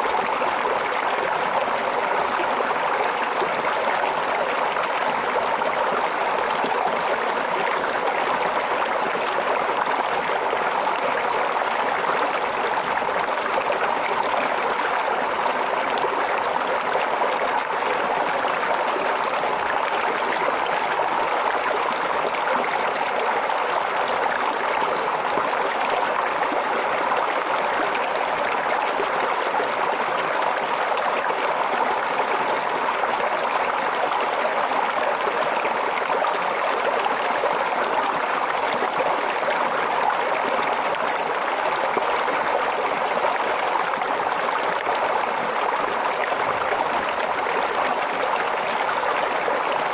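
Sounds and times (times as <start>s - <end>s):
stream water babbling: 0.0s - 49.9s.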